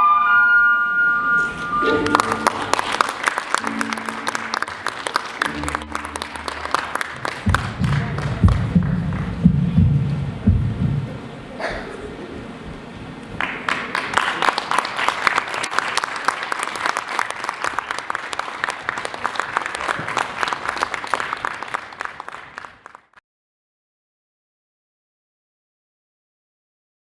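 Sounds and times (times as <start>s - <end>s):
audience applauding: 1.8s - 9.4s, 13.4s - 23.2s.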